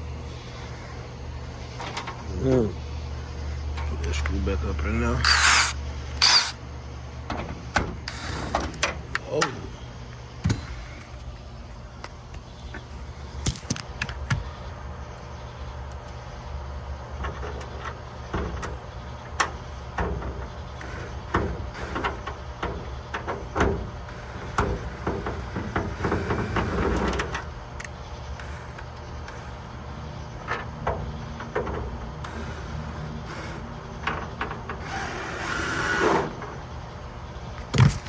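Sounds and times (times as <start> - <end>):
steady low hum: 0.0 - 19.9
metal lock parts clicking and rattling: 5.2 - 6.6.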